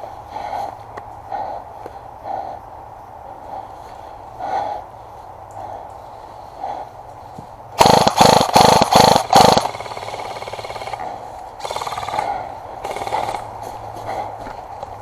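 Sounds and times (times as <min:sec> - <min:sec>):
airsoft gun firing bursts: 0:07.8 - 0:13.5.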